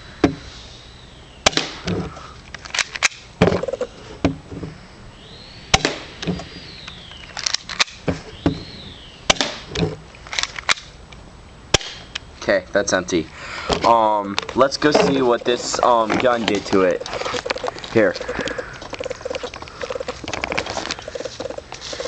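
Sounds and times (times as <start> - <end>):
airsoft pistol shots: 1.4 - 1.9, 5.7 - 6.1, 9.3 - 9.7, 11.7 - 12.1.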